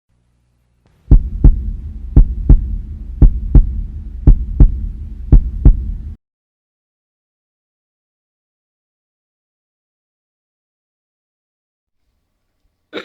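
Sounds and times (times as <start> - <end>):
steady low hum: 0.1 - 6.2
heartbeat thumps: 1.1 - 6.2.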